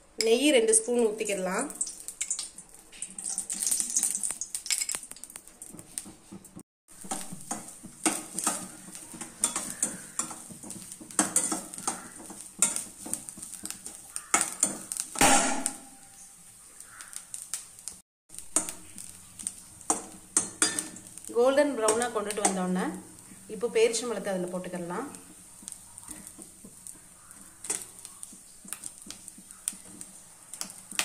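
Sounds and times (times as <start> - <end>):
food frying: 0.0 - 31.0
metal spoon scraping a pan: 7.0 - 16.1, 18.4 - 24.3, 25.2 - 31.0.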